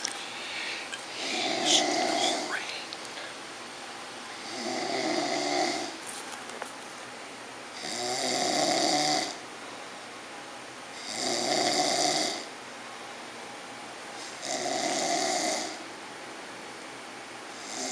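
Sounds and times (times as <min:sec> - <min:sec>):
quiet breathing: 0:00.0 - 0:03.5
loud rasping snores: 0:01.2 - 0:02.6, 0:04.4 - 0:05.9, 0:07.8 - 0:09.4, 0:11.0 - 0:12.5, 0:14.4 - 0:15.8, 0:17.6 - 0:17.9.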